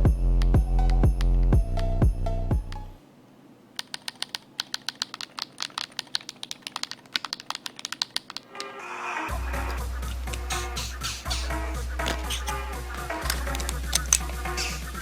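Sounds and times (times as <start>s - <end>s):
music: 0.0s - 3.0s, 9.1s - 15.0s
keyboard key clicks: 3.8s - 8.7s.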